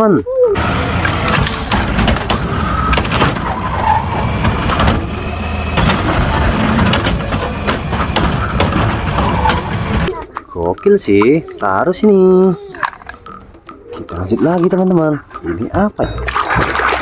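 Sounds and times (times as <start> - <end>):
water splashing: 10.1 - 17.0.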